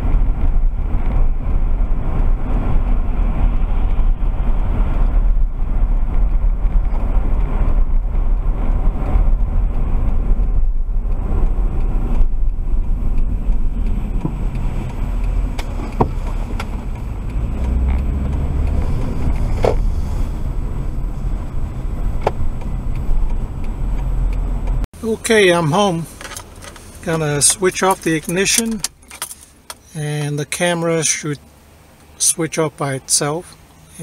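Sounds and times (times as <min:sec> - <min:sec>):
car road and engine rumble: 0:00.0 - 0:34.0
sharp clicks: 0:26.2 - 0:30.3.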